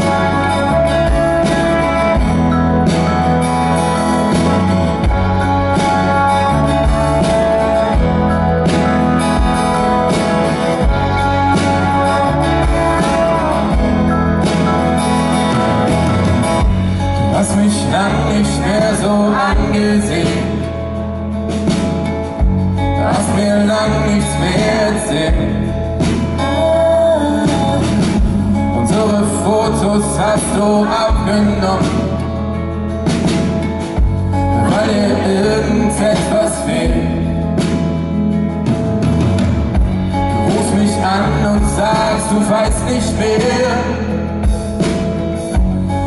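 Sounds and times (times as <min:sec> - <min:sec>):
man singing: 0:00.0 - 0:02.2, 0:17.0 - 0:21.1, 0:22.7 - 0:32.7, 0:34.3 - 0:37.7, 0:40.2 - 0:44.6
acoustic band playing pop ballad: 0:00.0 - 0:46.0.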